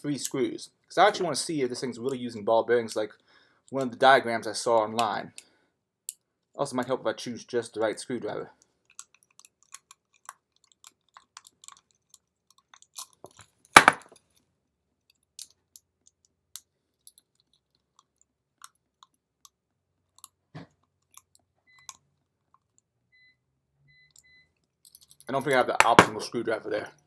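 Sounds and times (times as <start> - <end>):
padlock knock: 13.8 - 14.0, 25.8 - 26.2.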